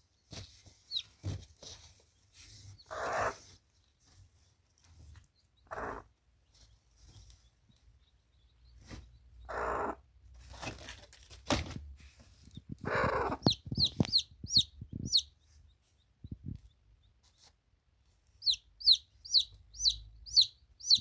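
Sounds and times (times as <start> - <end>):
chickens clucking and squawking: 2.8 - 3.6, 5.6 - 6.1, 8.8 - 10.2, 12.7 - 15.2
high chirps: 18.4 - 21.0.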